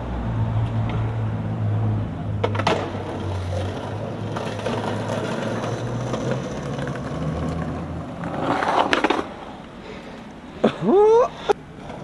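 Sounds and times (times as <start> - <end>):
skateboard wheels rolling on pavement: 0.0 - 12.0
skateboard scraping and clattering: 2.3 - 10.5, 11.6 - 12.0.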